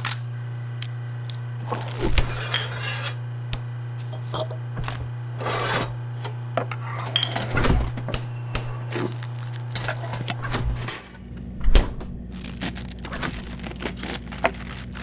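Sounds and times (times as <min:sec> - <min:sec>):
steady low hum: 0:00.0 - 0:15.0
scrapes and rubbing sounds: 0:01.8 - 0:03.2.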